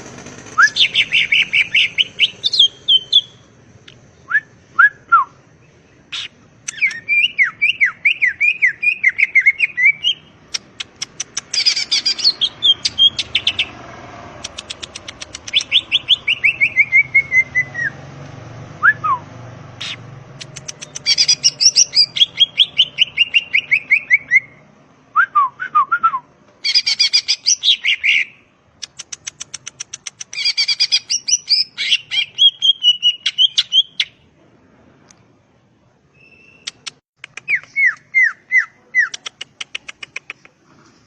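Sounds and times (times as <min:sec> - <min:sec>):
bird singing whistled trills: 0:00.6 - 0:03.5, 0:04.2 - 0:10.3, 0:11.5 - 0:13.7, 0:15.4 - 0:18.0, 0:20.8 - 0:24.6, 0:25.2 - 0:28.4, 0:30.3 - 0:34.2, 0:36.1 - 0:36.8, 0:37.4 - 0:39.2.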